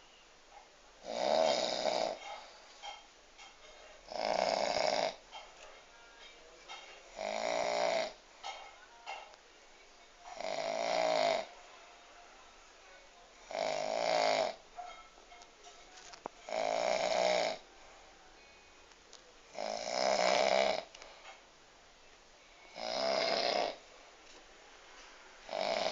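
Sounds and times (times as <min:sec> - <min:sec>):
woman snoring: 0:01.0 - 0:02.4, 0:04.1 - 0:05.2, 0:07.1 - 0:08.2, 0:10.3 - 0:11.5, 0:13.4 - 0:14.6, 0:16.5 - 0:17.6, 0:19.5 - 0:21.0, 0:22.6 - 0:23.8, 0:25.5 - 0:25.9.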